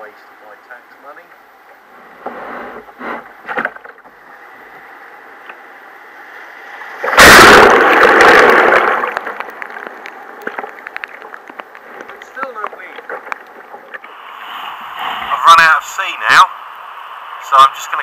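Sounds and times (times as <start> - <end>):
water lapping against hull: 10.4 - 15.3.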